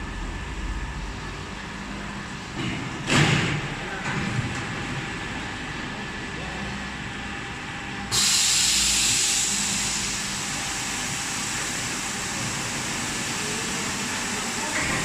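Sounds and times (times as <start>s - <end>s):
carpet washing machine running: 6.4s - 15.0s
hiss of spray: 8.1s - 15.0s.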